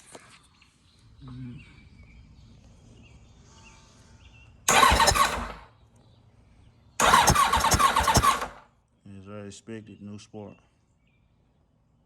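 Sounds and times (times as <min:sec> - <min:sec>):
motorcycle starter cranking engine: 0:04.7 - 0:05.7, 0:07.0 - 0:08.6.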